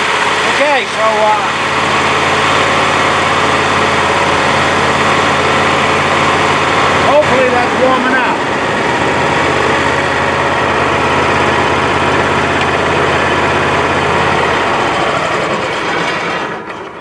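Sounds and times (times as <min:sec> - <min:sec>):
engine running steadily: 0:00.0 - 0:17.0.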